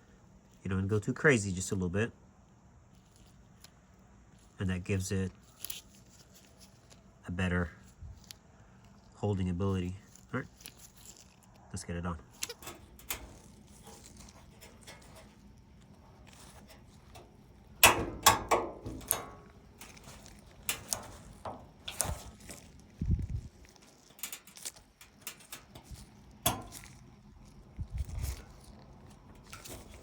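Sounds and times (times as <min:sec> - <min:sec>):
clicks and knocks of parts handled: 0:12.3 - 0:30.0.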